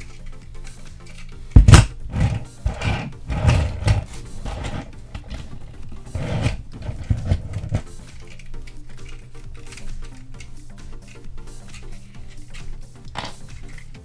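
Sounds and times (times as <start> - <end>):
quiet background music: 0.0 - 14.0
plastic figure knocks and clicks: 1.6 - 5.5.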